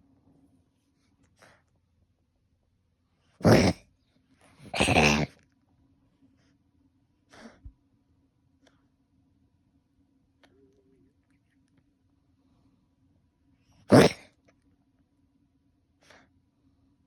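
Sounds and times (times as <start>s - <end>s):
person coughing: 4.7s - 5.3s.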